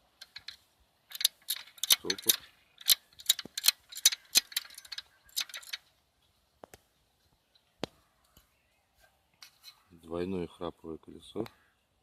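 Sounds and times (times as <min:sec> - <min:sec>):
winch ratchet clicking: 0:00.2 - 0:05.8.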